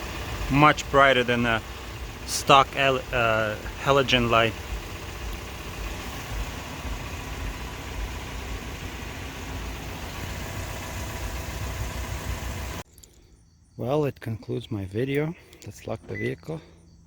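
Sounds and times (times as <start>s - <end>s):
car engine idling: 0.0s - 12.8s.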